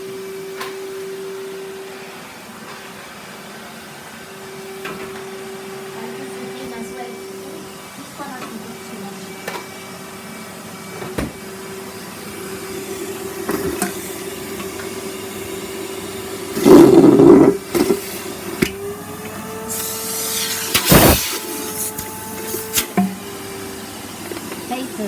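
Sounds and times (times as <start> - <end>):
vacuum cleaner motor hum: 0.0 - 25.0
vacuum sucking up debris: 12.2 - 24.9.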